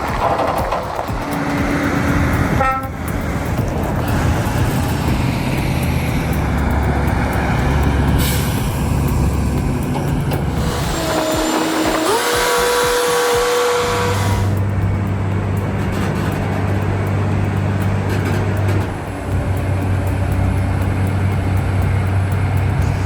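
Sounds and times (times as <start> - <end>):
truck engine running: 0.0 - 23.0.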